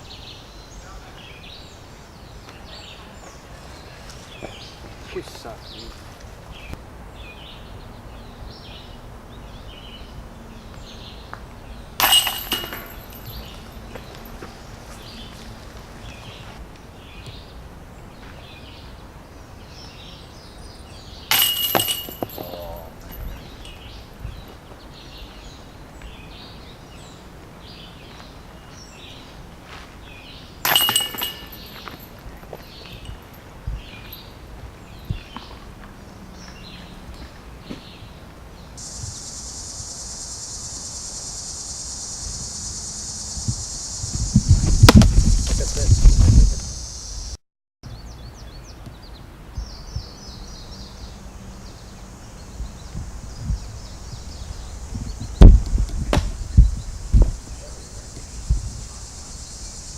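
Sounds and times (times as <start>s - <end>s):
insects buzzing: 0.0s - 47.4s, 50.2s - 59.9s
disc striking basket chains: 12.0s - 14.5s, 21.3s - 24.0s, 30.6s - 34.3s
faint chirps: 22.3s - 24.6s, 38.8s - 44.6s.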